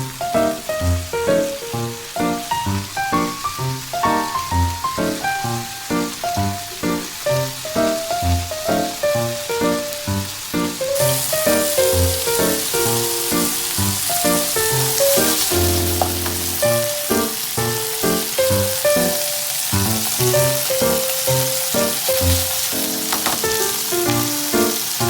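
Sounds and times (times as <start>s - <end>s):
food sizzling in a pan: 0.0s - 25.0s
mellow plucked and keyed melody: 23.1s - 24.8s.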